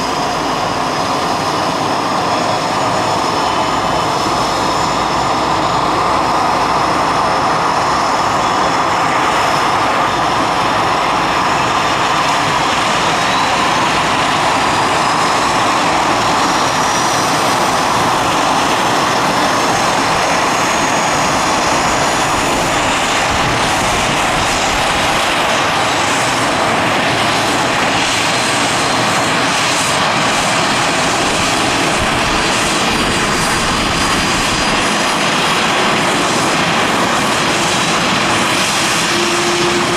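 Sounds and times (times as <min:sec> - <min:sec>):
helicopter engines and rotor: 0:00.0 - 0:39.9
high turbine whine: 0:00.0 - 0:39.9.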